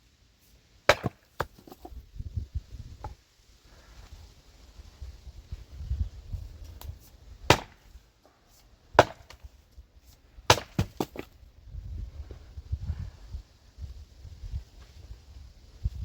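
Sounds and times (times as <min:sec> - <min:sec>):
axe chopping firewood: 0:00.8 - 0:02.0, 0:06.8 - 0:08.0, 0:08.9 - 0:09.5, 0:10.4 - 0:11.4.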